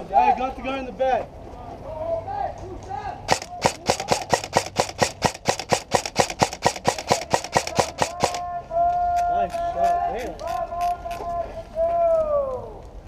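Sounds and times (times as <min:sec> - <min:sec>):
airsoft gun rapid shots: 0:03.3 - 0:08.4.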